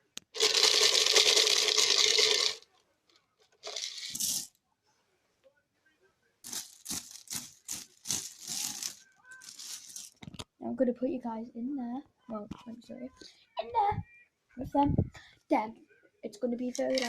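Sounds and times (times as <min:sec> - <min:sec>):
rattling clatter of small hard objects: 0:00.4 - 0:02.6, 0:03.6 - 0:04.5, 0:06.5 - 0:10.4, 0:16.6 - 0:17.0.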